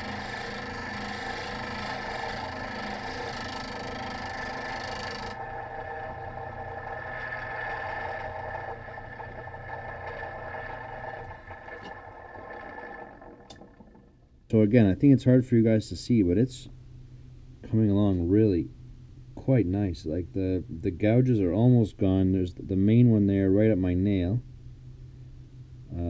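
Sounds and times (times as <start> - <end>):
electric grinder running: 0.0 - 13.2
chisel scraping on grinding wheel: 0.0 - 13.5.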